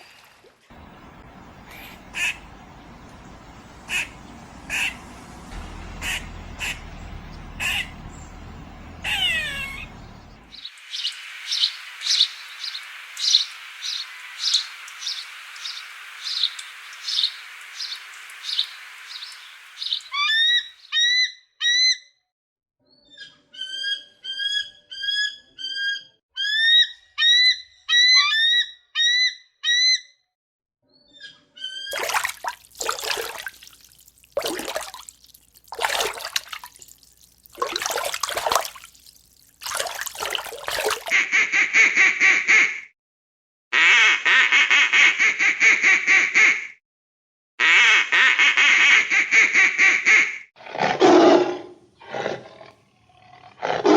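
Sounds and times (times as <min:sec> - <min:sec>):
long buzzy calls: 0:00.7 - 0:20.6, 0:31.9 - 0:41.2
loud harsh animal calls: 0:01.3 - 0:03.2, 0:03.8 - 0:08.1, 0:08.8 - 0:10.2.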